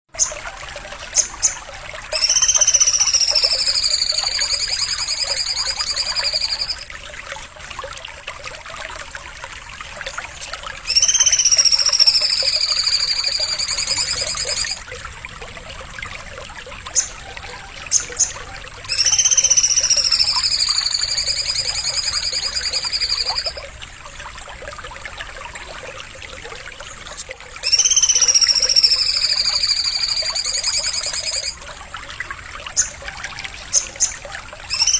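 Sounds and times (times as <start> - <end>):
songbird trilled buzzy call: 1.2 - 6.8, 10.9 - 14.8, 17.9 - 23.6, 27.6 - 31.6.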